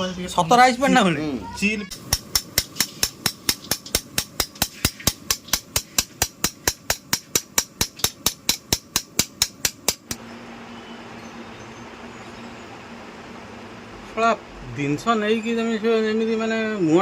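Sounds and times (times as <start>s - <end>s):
rapid sharp knocks: 1.9s - 10.2s.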